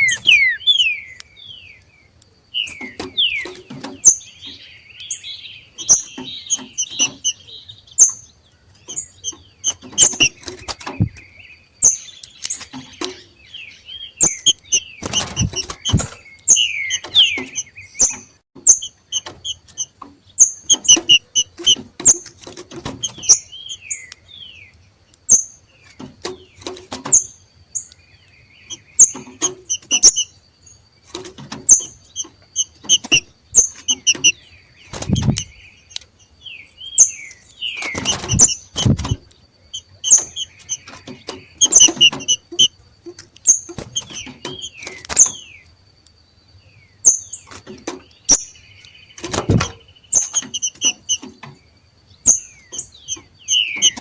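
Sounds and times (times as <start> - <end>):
sharp clicks: 0.0 - 4.0, 8.9 - 13.2, 14.2 - 24.2, 27.9 - 30.3, 31.1 - 36.1, 37.3 - 45.4
birds chipping and calling: 0.0 - 54.0.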